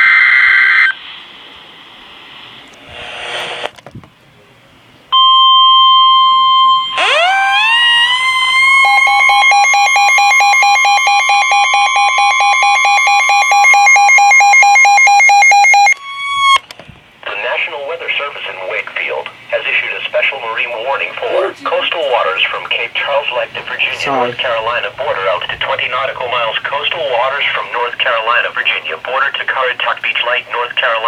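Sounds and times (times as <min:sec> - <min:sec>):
steady warning alarm tone: 0:05.1 - 0:16.6
rising electronic alarm beeping: 0:05.2 - 0:16.6.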